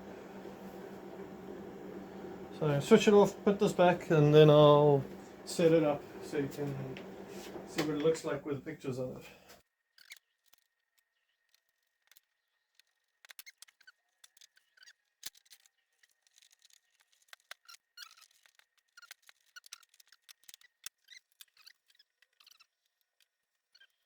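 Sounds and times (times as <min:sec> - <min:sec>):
faint clicks and taps: 0:00.0 - 0:08.3.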